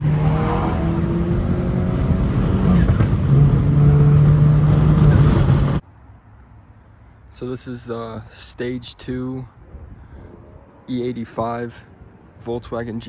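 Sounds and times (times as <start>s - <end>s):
loud car exhaust drone: 0.0s - 5.8s.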